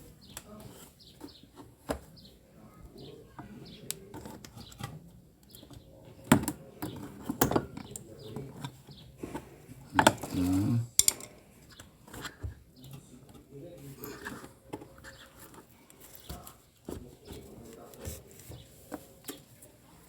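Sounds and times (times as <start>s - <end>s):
clicks and knocks of parts handled: 11.0s - 18.1s.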